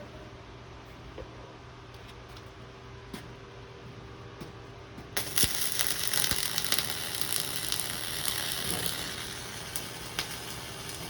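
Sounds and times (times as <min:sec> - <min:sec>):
welding arc crackling and sizzling: 0:05.2 - 0:11.0.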